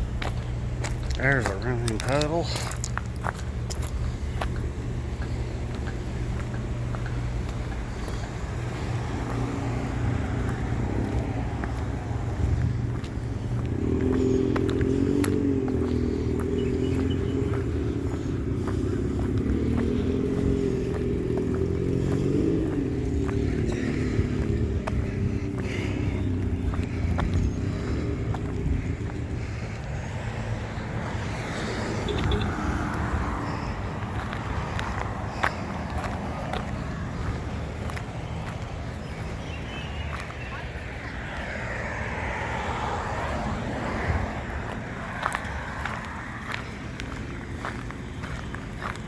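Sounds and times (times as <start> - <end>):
engine humming: 0.0 - 49.0
motor vehicle rumble: 0.0 - 49.0
higher engine tone: 4.0 - 34.1.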